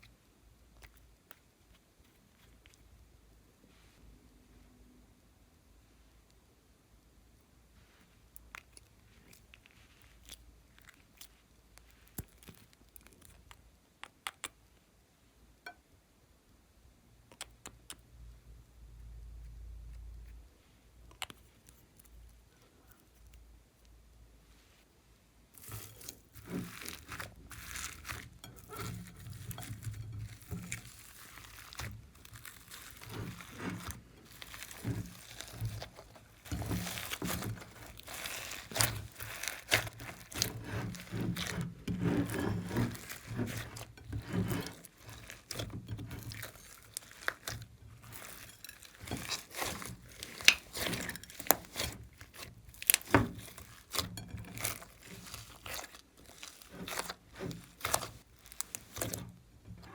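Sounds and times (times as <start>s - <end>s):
slime sticky clicks and crackles: 8.4s - 14.6s, 17.3s - 18.0s, 21.1s - 22.2s, 25.6s - 59.2s.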